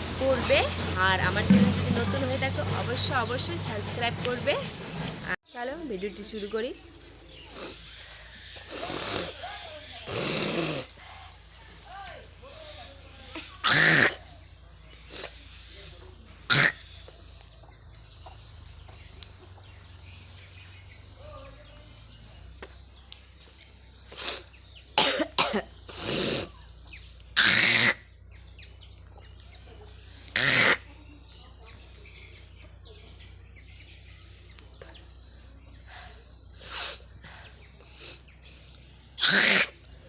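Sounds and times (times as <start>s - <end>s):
person coughing: 25.0s - 25.7s.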